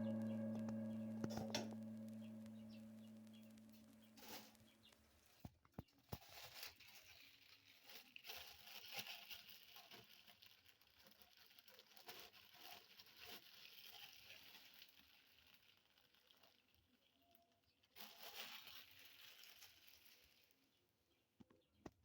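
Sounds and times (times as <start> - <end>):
faint crackling: 0.0 - 4.9.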